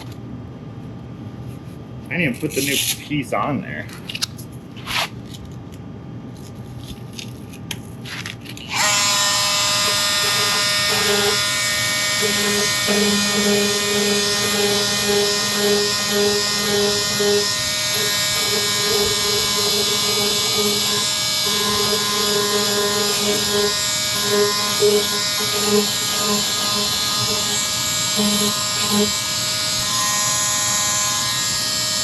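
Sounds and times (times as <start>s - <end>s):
power sander buzzing: 8.7s - 32.0s.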